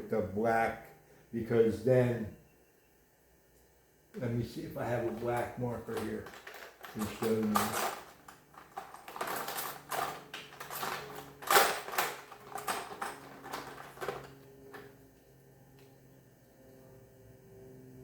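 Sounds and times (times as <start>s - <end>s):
faint hum: 0.0s - 18.0s
hands rummaging small objects: 5.0s - 14.4s.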